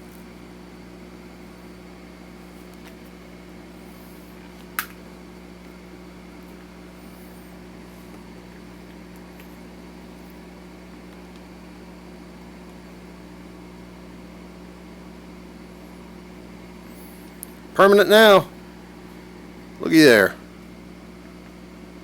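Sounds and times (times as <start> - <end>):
mechanical hum with low tones: 0.0 - 22.0.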